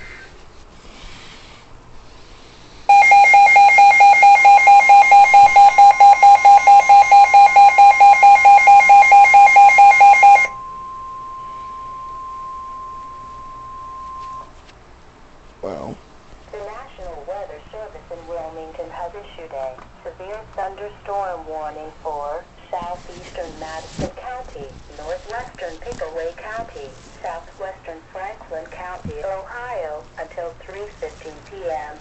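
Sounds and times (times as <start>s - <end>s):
pulsing electronic alarm beep: 2.9s - 14.5s
steady one-pitch alarm tone: 2.9s - 14.6s.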